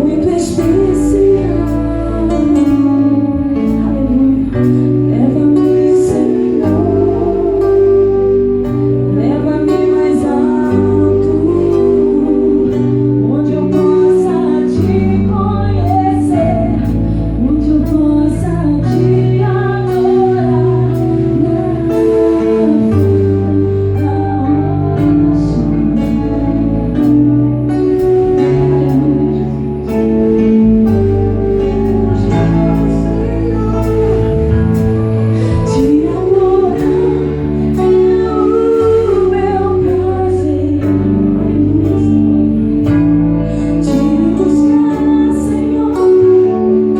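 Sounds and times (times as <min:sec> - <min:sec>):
gospel band playing: 0:00.0 - 0:46.9
person singing: 0:00.0 - 0:46.9.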